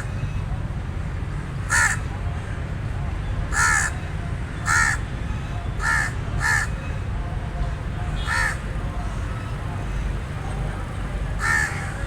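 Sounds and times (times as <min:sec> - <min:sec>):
raven cawing: 0:01.7 - 0:02.0, 0:03.5 - 0:04.0, 0:04.7 - 0:05.0, 0:05.8 - 0:06.7, 0:08.2 - 0:08.6, 0:11.4 - 0:12.0.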